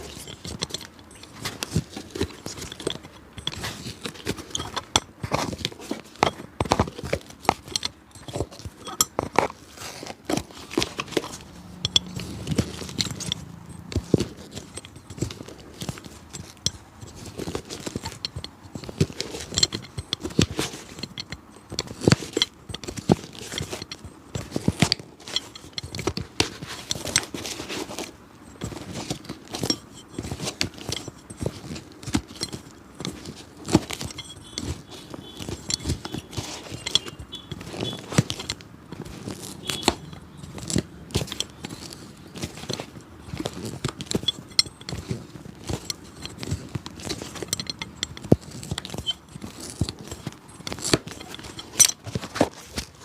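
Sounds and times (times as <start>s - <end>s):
hand tools clicking and tapping: 0.0s - 53.0s.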